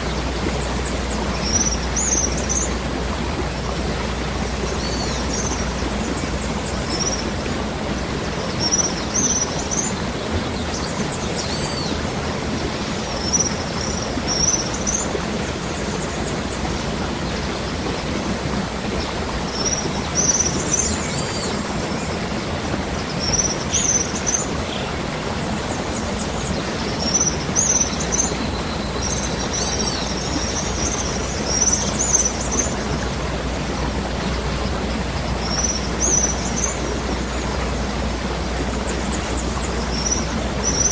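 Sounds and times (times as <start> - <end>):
small birds chirping: 0.0 - 2.8, 8.0 - 12.0, 38.3 - 40.9
waterfall rushing: 0.0 - 40.9.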